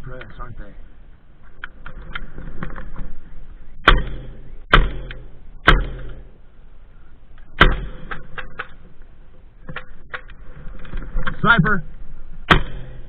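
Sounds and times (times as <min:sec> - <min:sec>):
airsoft gun shots: 0:03.8 - 0:06.4, 0:07.6 - 0:08.8, 0:12.5 - 0:13.0.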